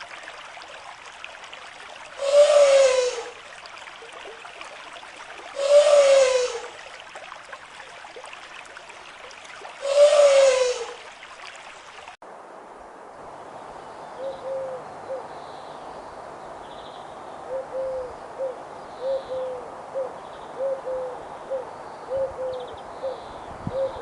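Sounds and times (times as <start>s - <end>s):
steady hiss: 2.1s - 3.4s, 5.5s - 6.8s, 9.8s - 11.1s
bird cooing: 2.2s - 3.4s, 5.6s - 6.8s, 9.8s - 11.1s, 14.2s - 15.3s, 17.5s - 24.0s.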